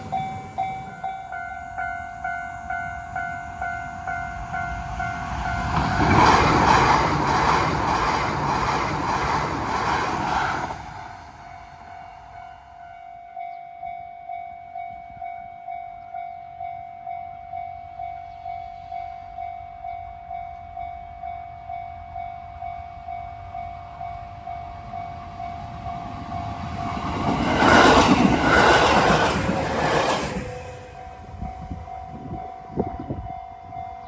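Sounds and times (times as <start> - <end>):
train rushing past: 0.0 - 13.1, 23.9 - 33.8
level-crossing warning bell dinging: 0.0 - 34.0.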